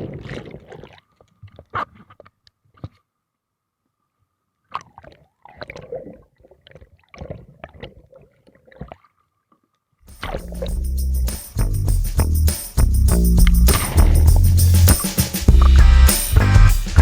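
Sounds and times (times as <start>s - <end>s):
water splashing and sloshing: 0.0s - 3.0s.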